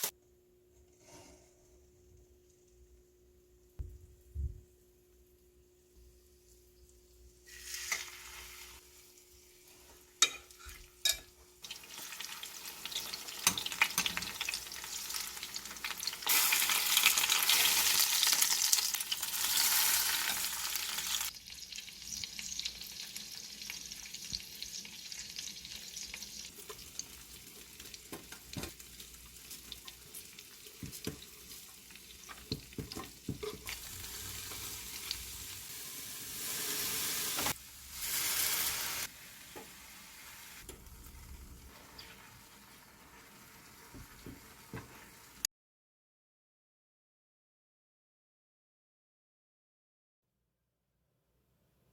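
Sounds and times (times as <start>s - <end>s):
food sizzling in a pan: 6.1s - 45.5s.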